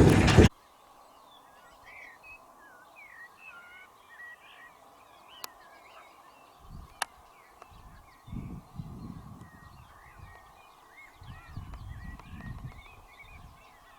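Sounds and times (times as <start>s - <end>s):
low rumbles: 0.0s - 0.5s
small birds chirping: 0.0s - 13.9s.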